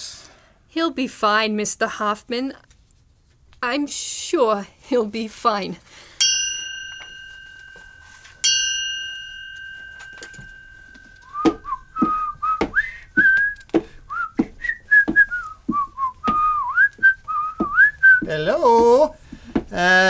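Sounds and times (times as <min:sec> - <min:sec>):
bell ringing: 0:06.2 - 0:12.2
footsteps: 0:06.8 - 0:08.5, 0:09.2 - 0:20.0
man whistling a tune: 0:11.2 - 0:18.3.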